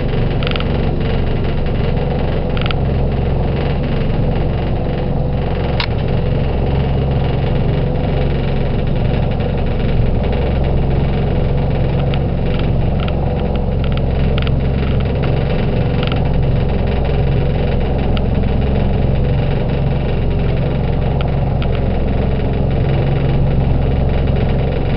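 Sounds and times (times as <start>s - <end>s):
motorboat engine drone: 0.0s - 24.9s
short sharp click: 5.8s - 6.0s.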